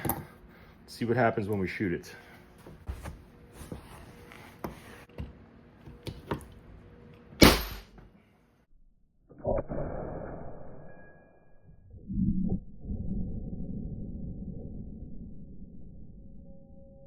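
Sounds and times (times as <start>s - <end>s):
nail gun bang: 7.4s - 8.0s.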